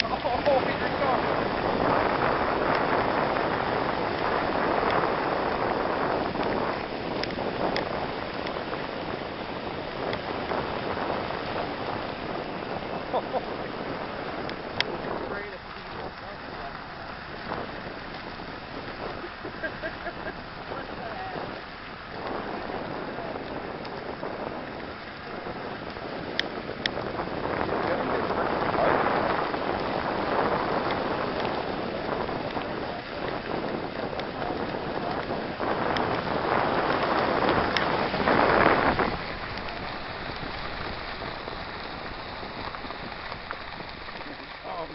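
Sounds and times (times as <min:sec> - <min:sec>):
car on road: 0:00.0 - 0:44.7
wind rushing: 0:00.0 - 0:44.9
faint ticks: 0:07.2 - 0:08.6, 0:14.4 - 0:14.9.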